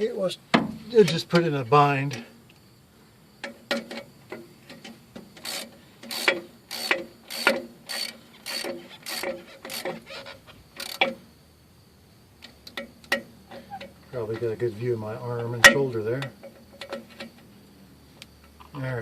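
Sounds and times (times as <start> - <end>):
ratcheting wrench clicks: 5.4 - 10.1, 10.8 - 11.1.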